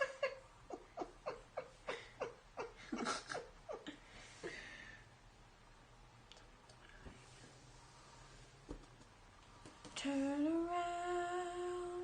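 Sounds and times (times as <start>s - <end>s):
woman laughing quietly: 0.0s - 4.8s.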